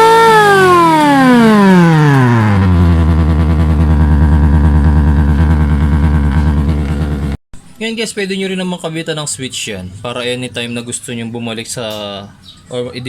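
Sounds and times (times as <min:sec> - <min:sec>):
buzzy motorcycle engine sound: 0:00.0 - 0:07.4.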